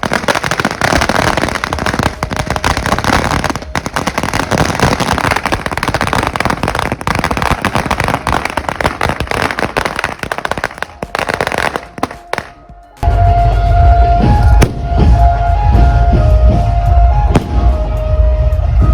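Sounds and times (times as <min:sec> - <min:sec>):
firecrackers popping: 0:00.0 - 0:12.9, 0:14.4 - 0:15.2, 0:17.3 - 0:17.7.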